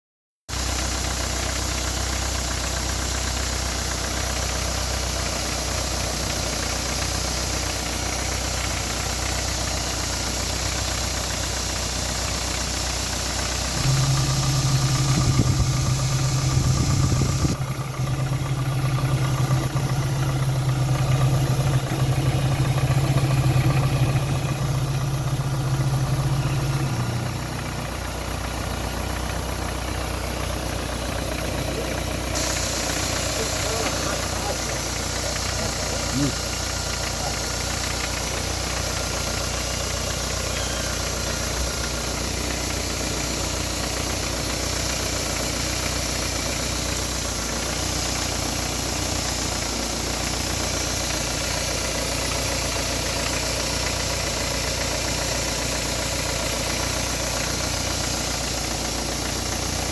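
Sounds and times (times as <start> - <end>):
engine idling with ticking: 0.5 - 59.9
steady hum: 13.8 - 18.0.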